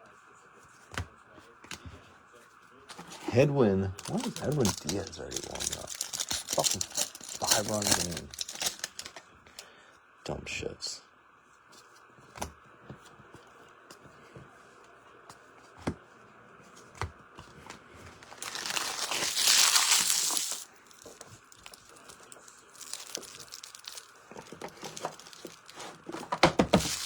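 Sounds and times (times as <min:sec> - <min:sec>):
foil wrapper tearing: 0:04.0 - 0:09.2, 0:18.2 - 0:27.0.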